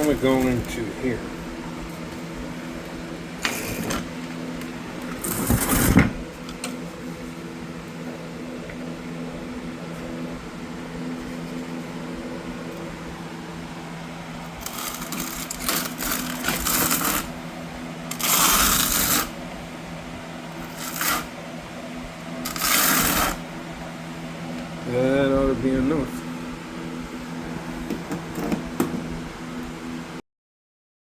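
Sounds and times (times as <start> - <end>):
steady low hum: 0.0 - 30.2
trowel scraping mortar: 3.4 - 4.1, 5.0 - 6.0, 14.5 - 17.4, 18.1 - 19.4, 20.6 - 21.4, 22.4 - 23.5.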